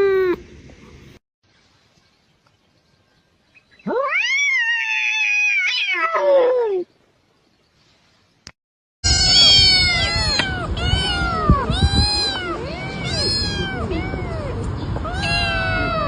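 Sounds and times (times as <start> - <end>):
cats and kittens meowing: 3.8 - 6.9, 9.0 - 16.0.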